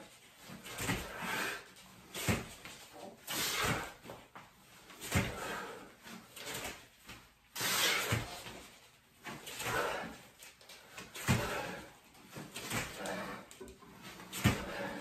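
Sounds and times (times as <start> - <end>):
hard breathing: 0.4 - 4.2, 5.0 - 6.8, 9.4 - 15.0.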